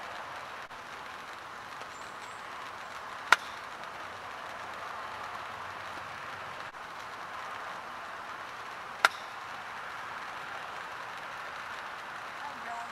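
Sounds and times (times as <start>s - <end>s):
light rain hissing: 0.0s - 12.9s
golf club striking ball: 3.3s - 3.7s, 9.0s - 9.4s.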